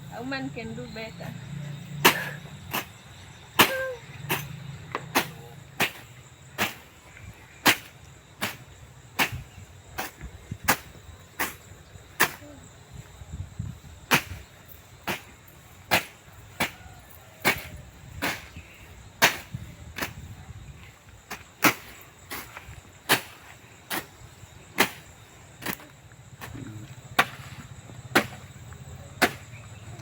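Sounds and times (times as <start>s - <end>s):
axe chopping firewood: 2.0s - 3.0s, 3.6s - 7.0s, 7.6s - 9.4s, 15.1s - 18.6s, 19.2s - 20.2s, 21.3s - 24.2s, 24.8s - 28.6s, 29.2s - 30.0s.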